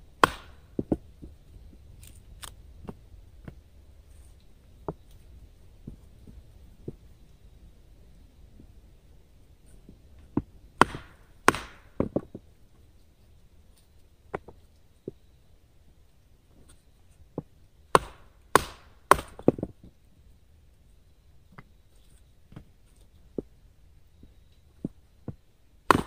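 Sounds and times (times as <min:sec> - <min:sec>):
axe chopping firewood: 0:00.1 - 0:01.3, 0:10.3 - 0:12.4, 0:17.4 - 0:19.8, 0:24.8 - 0:26.0.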